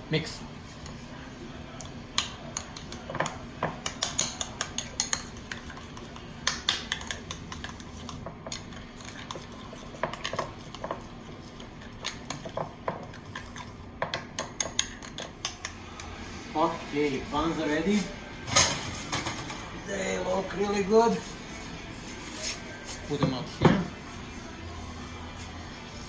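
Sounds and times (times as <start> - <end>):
spoon clinking against bowl: 2.2 - 9.4, 12.0 - 15.7.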